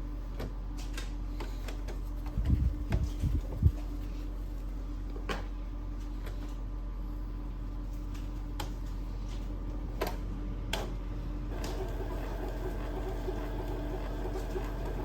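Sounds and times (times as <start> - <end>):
steady low hum: 0.0 - 15.0
printer mechanical rattle: 11.5 - 15.0
printer clicks: 11.6 - 15.0.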